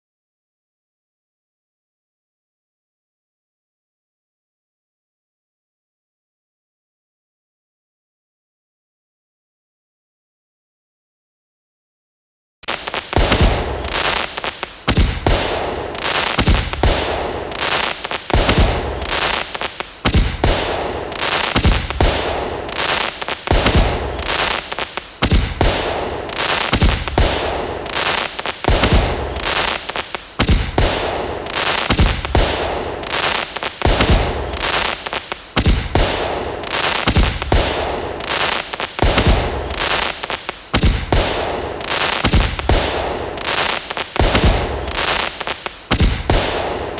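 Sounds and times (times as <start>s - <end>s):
fireworks bangs and crackle: 12.6s - 46.9s.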